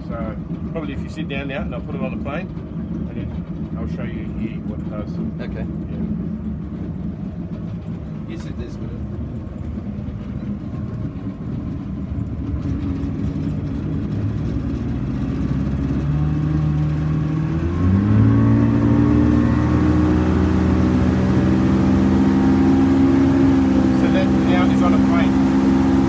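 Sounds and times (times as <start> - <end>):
motorboat engine accelerating: 0.0 - 26.0.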